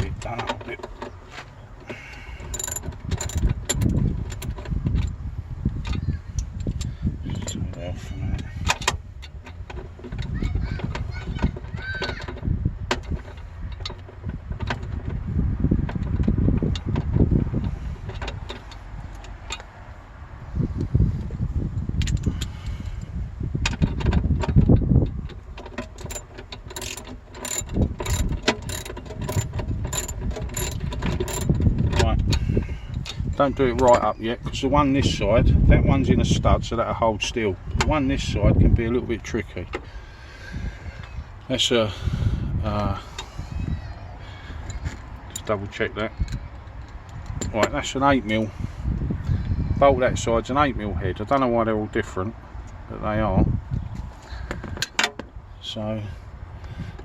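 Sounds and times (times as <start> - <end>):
ratchet wrench clicking: 1.9 - 4.6, 25.8 - 31.7.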